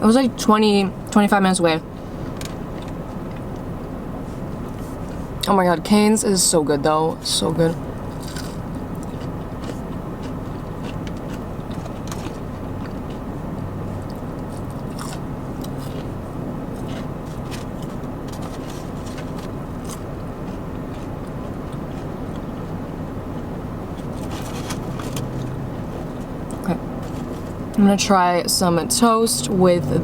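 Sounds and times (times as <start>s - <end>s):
steady low hum: 0.0s - 30.0s
person chewing crunchy food: 7.8s - 27.8s.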